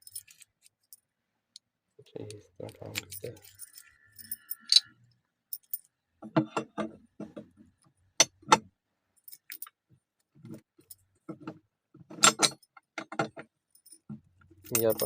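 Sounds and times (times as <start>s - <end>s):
metal lock clicking and knocking: 11.3s - 13.4s.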